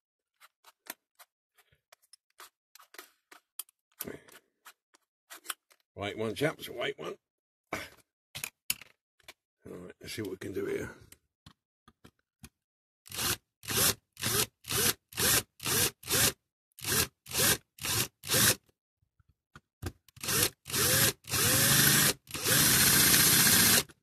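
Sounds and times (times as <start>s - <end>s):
electric drill drilling into metal: 13.1s - 18.6s, 20.2s - 24.0s.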